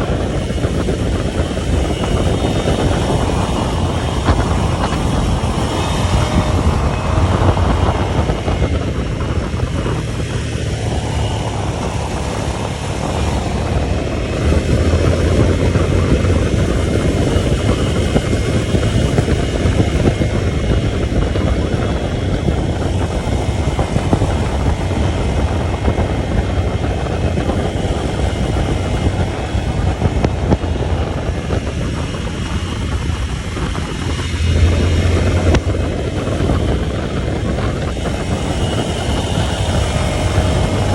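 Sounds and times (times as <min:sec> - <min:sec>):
vehicle engine and road rumble: 0:00.0 - 0:40.9.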